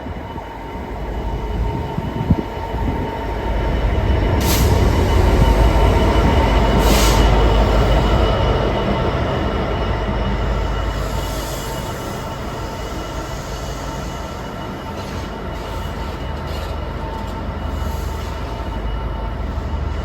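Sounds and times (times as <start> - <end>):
train rumbling on rails: 0.0 - 20.0.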